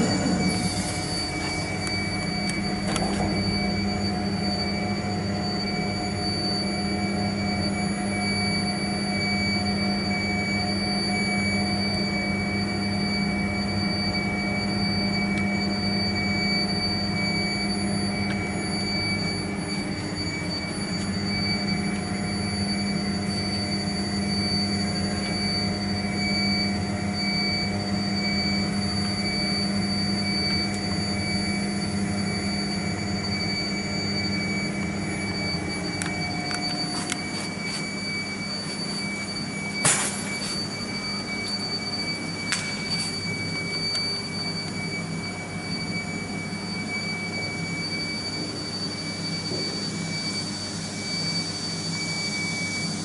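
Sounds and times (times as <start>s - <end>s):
low pulsing throb: 0.0s - 4.7s
lathe machine hum and whine: 0.0s - 53.0s.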